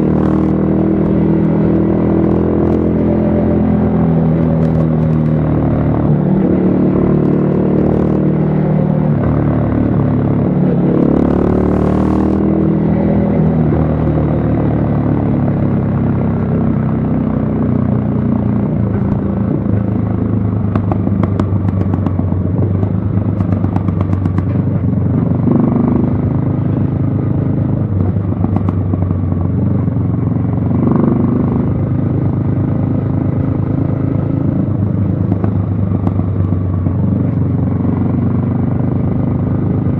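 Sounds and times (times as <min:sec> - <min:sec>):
motorcycle engine running: 0:00.0 - 0:39.9.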